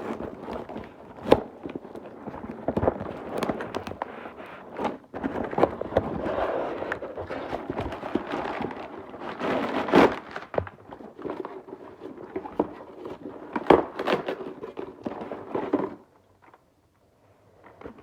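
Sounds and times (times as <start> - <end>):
plastic and cardboard crinkling: 0.0 - 16.6.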